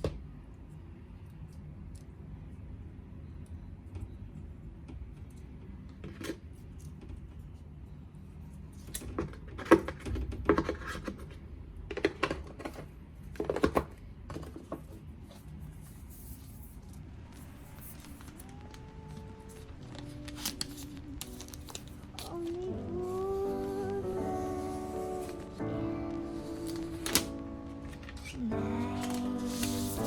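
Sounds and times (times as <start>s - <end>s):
faint low hum: 11.1s - 30.0s.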